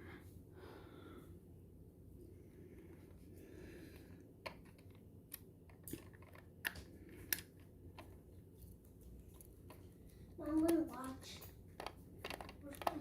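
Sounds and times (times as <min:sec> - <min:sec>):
faint room hum: 0:00.0 - 0:13.0
plastic toy parts clicking: 0:04.4 - 0:08.2, 0:11.8 - 0:13.0.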